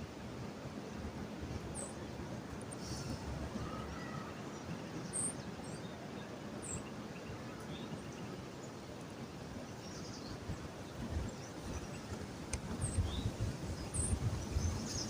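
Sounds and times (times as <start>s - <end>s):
background hiss: 0.0s - 15.0s.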